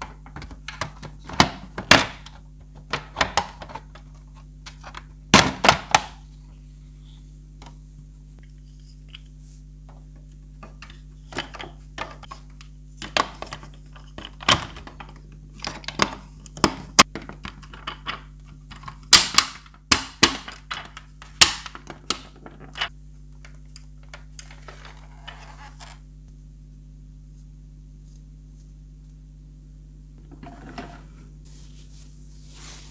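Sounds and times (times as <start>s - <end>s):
low hum: 22.4s - 32.9s
quiet rustling: 30.2s - 32.9s.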